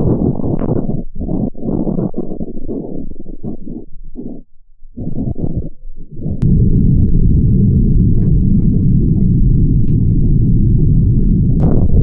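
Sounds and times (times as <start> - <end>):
wind buffeting microphone: 5.0 - 12.0.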